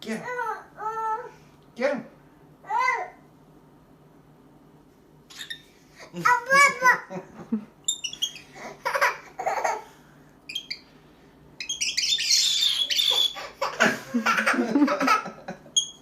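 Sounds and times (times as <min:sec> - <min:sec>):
cockatiel chirping: 0:07.9 - 0:08.4, 0:10.5 - 0:10.8, 0:11.6 - 0:13.4, 0:15.8 - 0:16.0
baby laughing and squealing: 0:07.9 - 0:09.9, 0:11.6 - 0:15.2.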